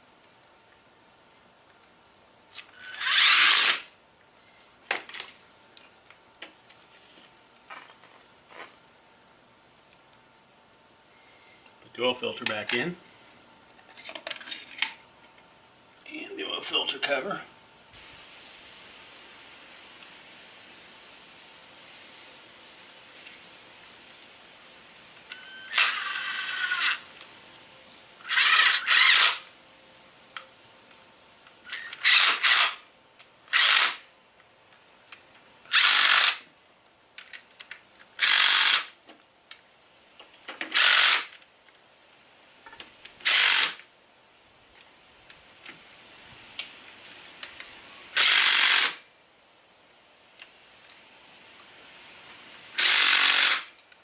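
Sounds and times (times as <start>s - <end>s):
cordless drill driving bolts: 2.6s - 3.9s, 25.3s - 27.1s, 28.3s - 29.5s, 31.7s - 32.8s, 33.5s - 34.0s, 35.7s - 36.4s, 38.2s - 39.0s, 40.6s - 41.4s, 43.2s - 43.8s, 48.2s - 49.0s, 52.8s - 53.8s.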